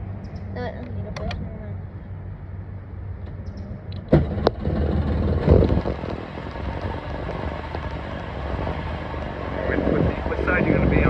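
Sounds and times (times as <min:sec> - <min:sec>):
outboard motor idling: 0:04.0 - 0:11.0.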